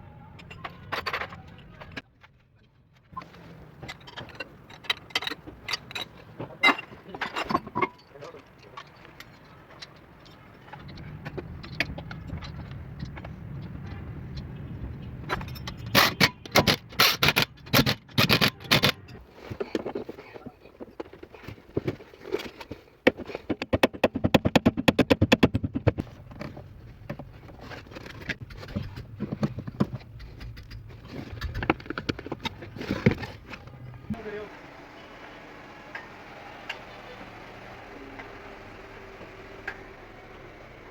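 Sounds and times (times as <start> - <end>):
metal clicks and scraping: 3.1 - 34.2.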